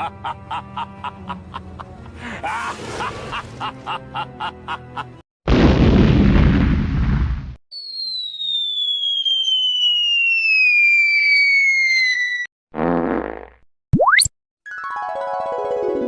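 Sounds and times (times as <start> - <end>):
loud explosion boom: 5.5 - 7.6.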